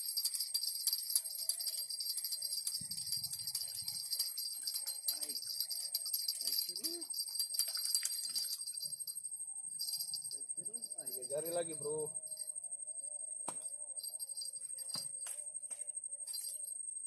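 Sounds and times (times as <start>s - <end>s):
insect chorus buzzing: 0.0s - 17.0s.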